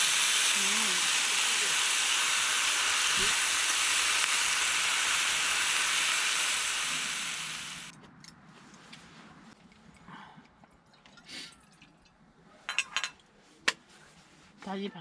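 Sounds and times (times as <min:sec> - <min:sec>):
loud steady hiss: 0:00.0 - 0:07.9.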